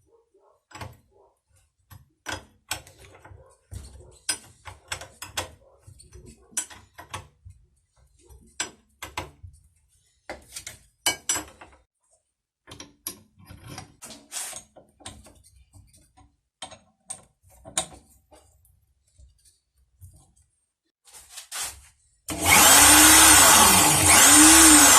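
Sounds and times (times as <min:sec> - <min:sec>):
tools clicking and clinking on metal: 0:00.7 - 0:01.0, 0:01.8 - 0:07.5, 0:10.3 - 0:11.8.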